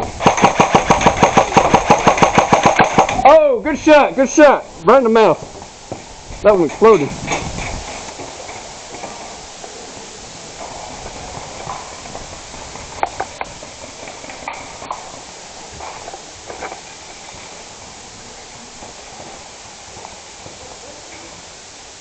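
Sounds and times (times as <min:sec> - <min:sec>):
steady background hiss: 0:00.0 - 0:22.0
sharp clicks: 0:00.2 - 0:03.3.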